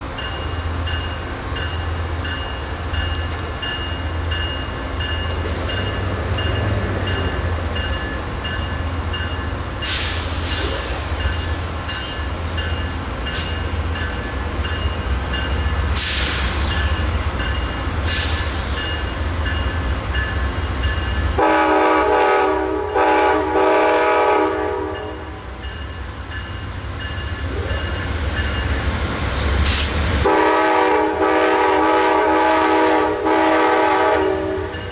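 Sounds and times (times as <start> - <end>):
diesel locomotives rumbling: 0.0 - 34.9
short hissing bursts: 9.8 - 11.2
locomotive horn blasts: 21.4 - 25.4, 30.2 - 34.8.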